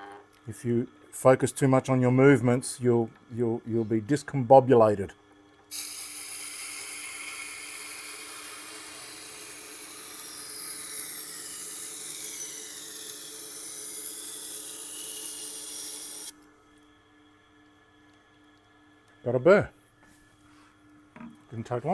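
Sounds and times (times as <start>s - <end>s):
knife grinding on sharpening wheel: 5.7s - 16.3s
motor humming: 5.7s - 16.9s.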